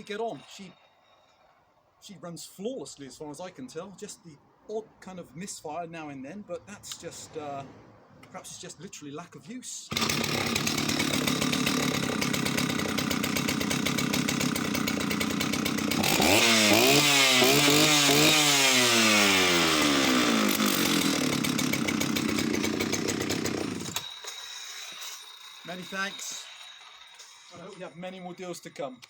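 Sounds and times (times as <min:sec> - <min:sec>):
chainsaw idling and revving: 0:09.9 - 0:29.0.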